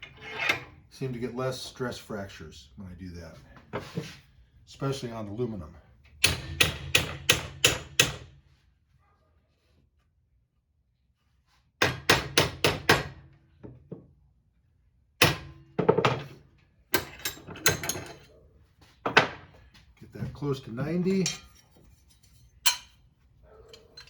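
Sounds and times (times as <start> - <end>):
hammer striking metal bracket: 6.2 - 8.2, 22.6 - 23.0.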